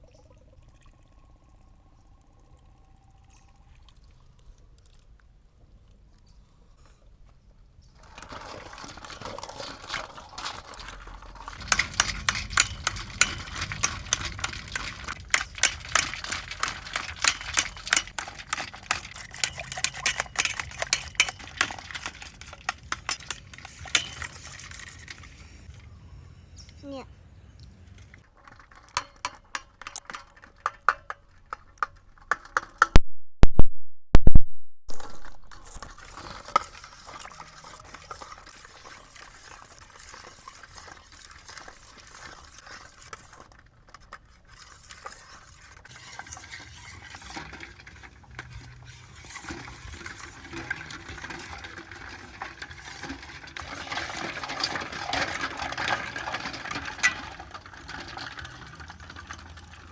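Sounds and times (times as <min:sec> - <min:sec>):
stirring and mixing: 0:07.9 - 0:25.9, 0:35.5 - 0:59.9
utensils clicking against bowl: 0:11.6 - 0:25.7.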